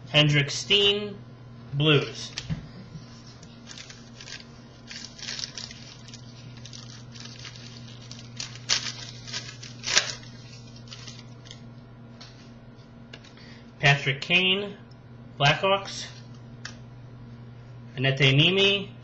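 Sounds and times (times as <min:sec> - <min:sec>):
steady low hum: 0:00.0 - 0:19.0
cards rustling against each other: 0:02.3 - 0:11.6.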